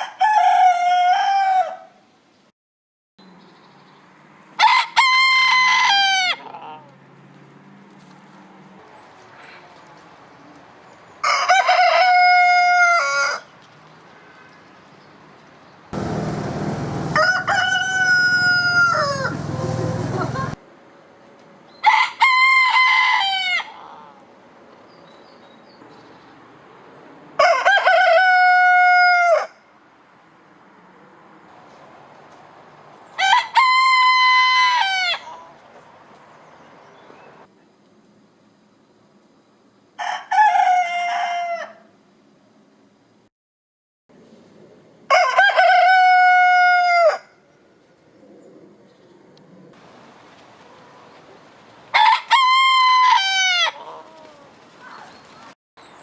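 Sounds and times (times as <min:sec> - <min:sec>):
roosters crowing: 0:16.0 - 0:20.6, 0:27.4 - 0:29.5, 0:45.1 - 0:47.3, 0:51.9 - 0:54.5.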